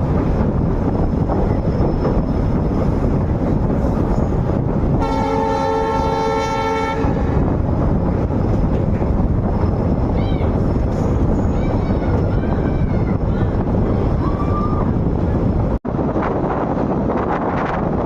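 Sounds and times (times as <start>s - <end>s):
train running: 0.0s - 18.0s
train horn blast: 4.9s - 7.4s.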